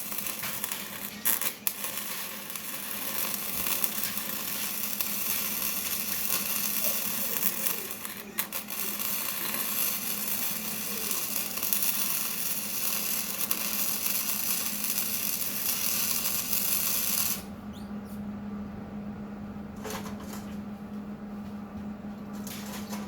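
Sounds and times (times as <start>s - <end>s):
power tool running with high hiss: 0.0s - 17.9s.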